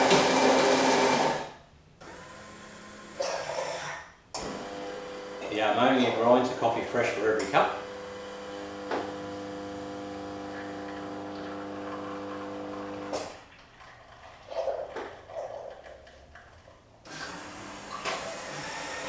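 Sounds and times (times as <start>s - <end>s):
coffee grinder motor: 0.0s - 1.4s, 7.7s - 13.2s, 17.1s - 19.0s.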